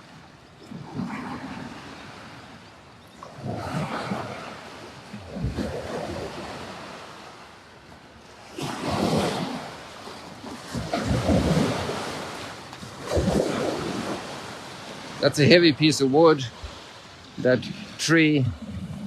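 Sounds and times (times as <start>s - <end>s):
small waves washing on shore: 0.0s - 19.0s
waves crashing: 0.0s - 19.0s.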